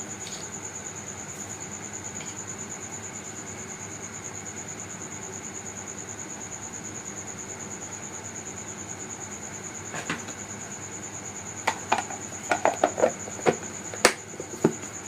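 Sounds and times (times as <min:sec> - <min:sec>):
steady high-pitched whine: 0:00.0 - 0:15.0
kitchenware knocking and clinking: 0:11.7 - 0:13.6.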